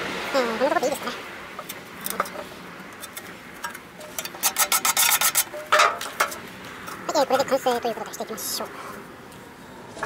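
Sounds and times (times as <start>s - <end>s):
scraping on metal: 1.6s - 7.0s.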